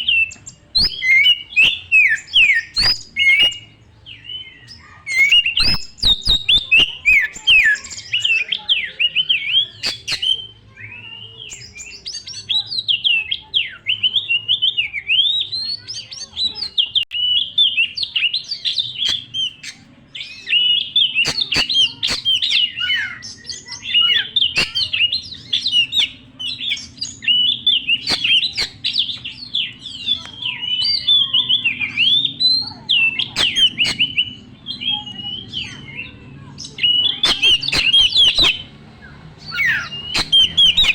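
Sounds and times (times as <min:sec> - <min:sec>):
bird singing whistled phrases: 0:00.0 - 0:40.9
sharp clicks: 0:09.8 - 0:10.3, 0:21.2 - 0:22.6, 0:28.0 - 0:29.3, 0:33.4 - 0:34.2, 0:37.2 - 0:38.6, 0:40.1 - 0:40.9.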